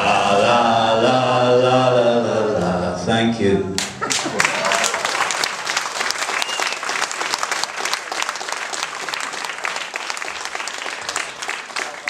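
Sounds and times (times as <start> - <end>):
audience applauding: 4.0 - 12.0.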